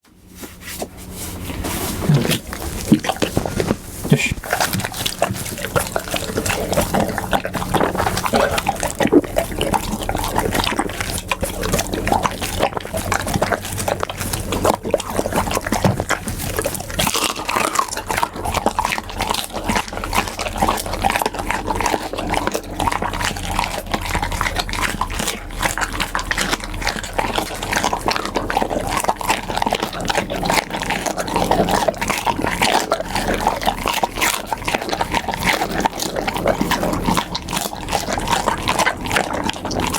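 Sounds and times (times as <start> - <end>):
dog chewing food: 0.3 - 39.9.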